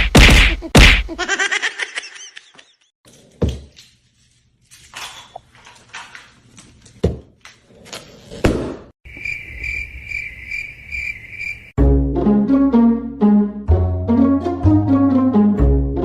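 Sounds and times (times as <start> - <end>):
knocks and thuds: 0.0 - 1.1
cricket-like chirping: 9.1 - 11.7.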